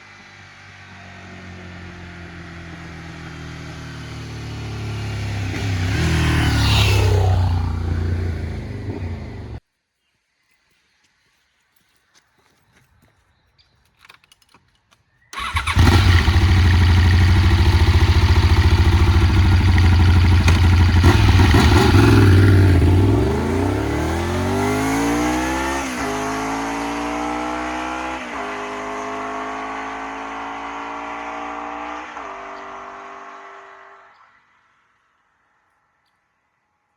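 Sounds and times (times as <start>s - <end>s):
motorcycle engine accelerating: 0.7s - 9.6s, 15.4s - 34.0s.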